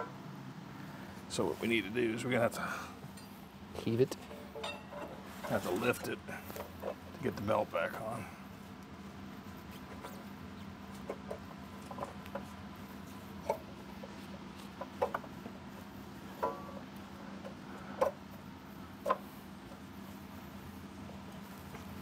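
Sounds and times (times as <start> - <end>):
steady low hum: 0.0 - 22.0
tools and parts clicking and knocking: 16.4 - 16.8.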